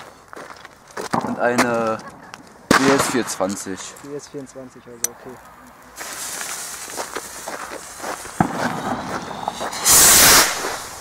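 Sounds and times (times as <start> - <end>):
fireworks fizzing and crackling: 1.0 - 4.3, 5.2 - 11.0
loud hissing firework shot: 6.0 - 11.0.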